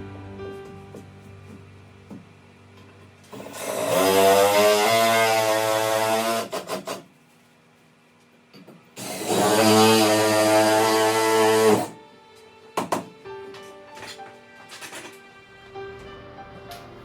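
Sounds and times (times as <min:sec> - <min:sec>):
power drill driving screws into wood: 0:03.3 - 0:07.0, 0:09.0 - 0:12.0.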